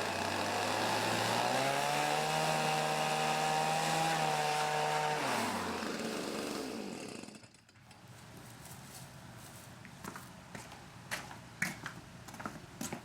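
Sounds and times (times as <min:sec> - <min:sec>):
leaf blower engine running: 0:00.0 - 0:07.6.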